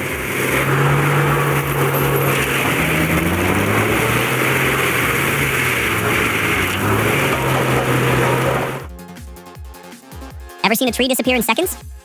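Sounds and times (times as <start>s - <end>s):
diesel engine running under load: 0.0s - 8.9s.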